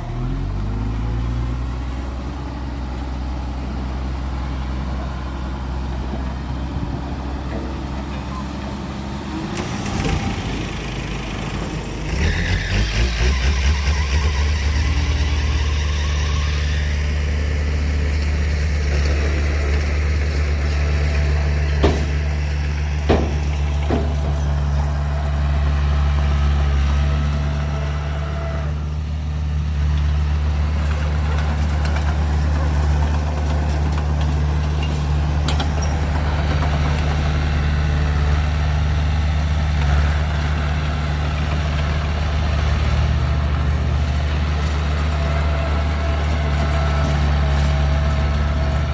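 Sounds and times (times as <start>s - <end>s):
heavy diesel engine running: 0.0s - 48.9s
sharp knocks: 21.8s - 22.2s, 23.1s - 24.4s.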